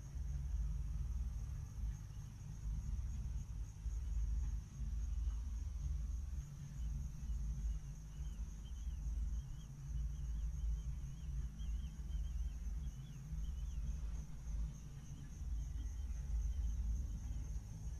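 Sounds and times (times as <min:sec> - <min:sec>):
high insect hum: 0:00.0 - 0:17.9
bird twittering: 0:06.8 - 0:17.1.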